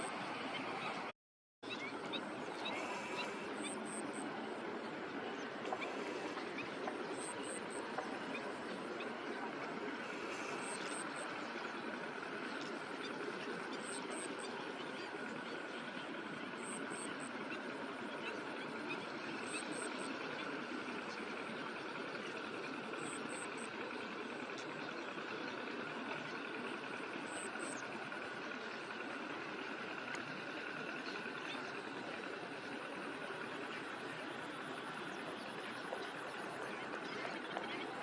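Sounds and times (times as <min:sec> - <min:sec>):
tractor engine drone: 0:01.7 - 0:38.0.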